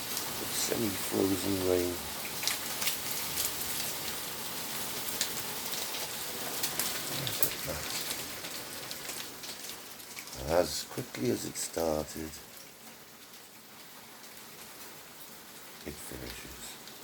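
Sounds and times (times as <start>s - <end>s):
hailstones striking the ground: 0.0s - 17.0s.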